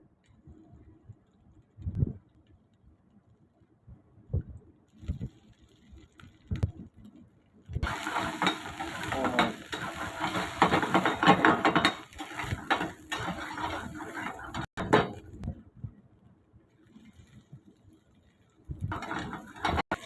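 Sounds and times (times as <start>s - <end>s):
utensil clinking on metal: 7.8s - 15.3s, 18.9s - 20.0s
spatula scraping food in pan: 7.8s - 15.4s, 18.8s - 20.0s
food sizzling in hot oil: 7.8s - 15.6s, 16.8s - 20.0s.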